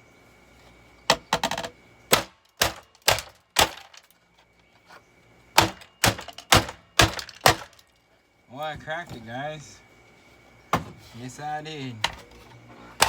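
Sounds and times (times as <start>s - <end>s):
hammer cracking plastic housing: 1.1s - 4.1s, 5.6s - 7.9s.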